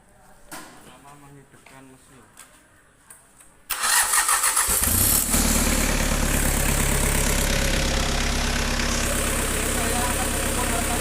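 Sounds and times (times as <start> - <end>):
diesel engine cranking: 3.7 - 11.0
diesel engine running: 4.7 - 11.0.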